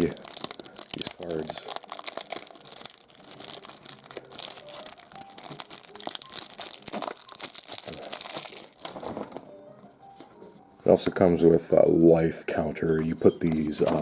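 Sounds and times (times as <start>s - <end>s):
card pack wrapper tearing: 0.0s - 9.4s
wrapper crinkling: 0.0s - 10.3s.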